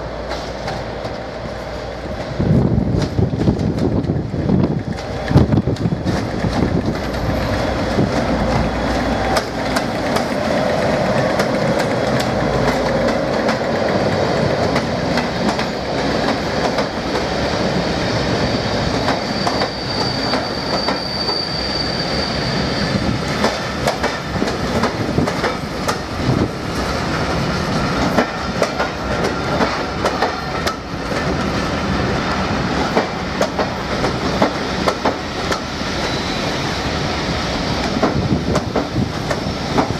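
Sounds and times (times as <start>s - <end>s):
train wheels clicking over rails: 0.0s - 39.9s
high wheel squeal: 17.8s - 23.8s, 35.7s - 37.7s.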